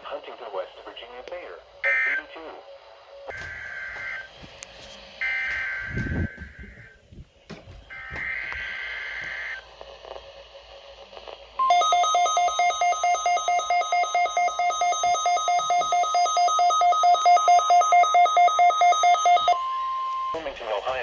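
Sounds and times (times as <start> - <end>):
warning alarm tone: 1.8 - 2.4, 3.3 - 4.5, 5.2 - 7.0, 7.8 - 9.6, 11.6 - 21.0
radio receiver alarm beeping: 1.8 - 2.7, 3.3 - 7.0, 7.8 - 9.6, 11.6 - 21.0
digital header data tones: 1.8 - 4.4, 5.2 - 7.0, 7.8 - 9.6.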